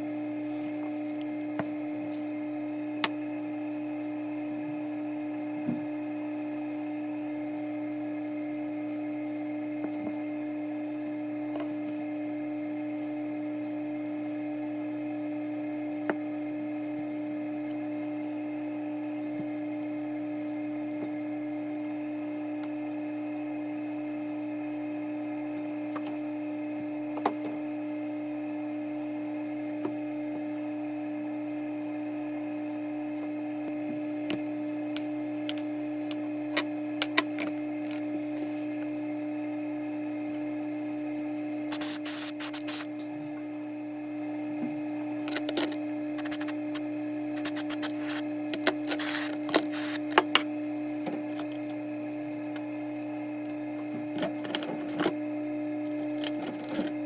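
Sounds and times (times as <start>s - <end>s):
steady hum: 30.2s - 57.0s.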